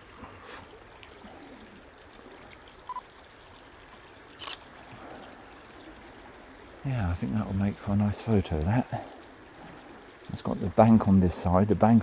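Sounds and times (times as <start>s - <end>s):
stream running water: 0.0s - 12.0s
camera focus beep: 2.9s - 3.1s, 4.4s - 4.6s.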